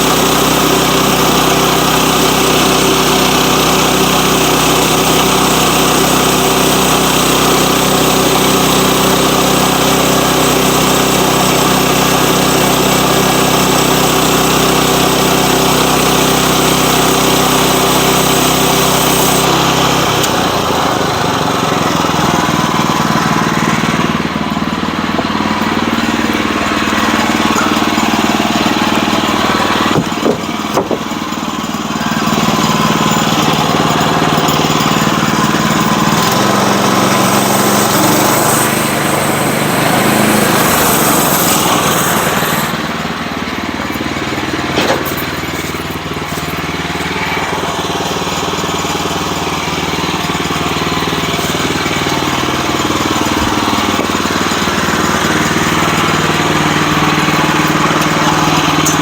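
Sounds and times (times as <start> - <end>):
engine-driven sawmill running: 0.0 - 59.0
short knocks: 29.9 - 31.2.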